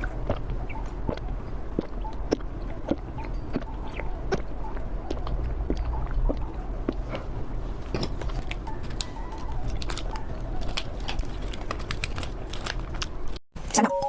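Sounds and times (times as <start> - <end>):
steady low hum: 0.0 - 13.7
candy crunching: 7.9 - 13.4.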